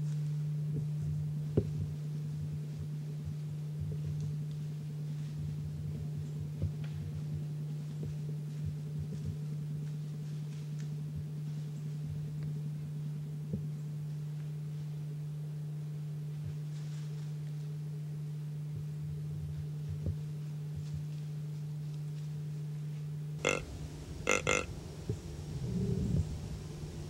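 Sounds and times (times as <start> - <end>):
low electrical hum: 0.0 - 27.0
sudden loud call: 23.4 - 25.0.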